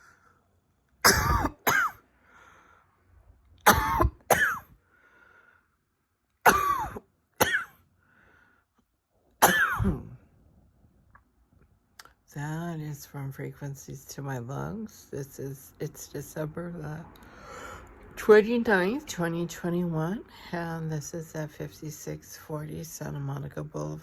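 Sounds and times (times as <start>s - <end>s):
woman coughing: 1.0s - 2.0s, 3.7s - 4.7s, 6.4s - 7.8s, 9.4s - 10.2s
soft breaths: 2.1s - 3.3s, 4.8s - 6.0s, 8.0s - 8.8s, 17.2s - 18.2s.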